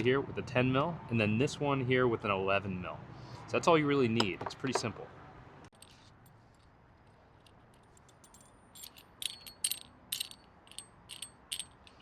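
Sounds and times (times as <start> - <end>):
metal tools clinking: 5.7 - 12.0.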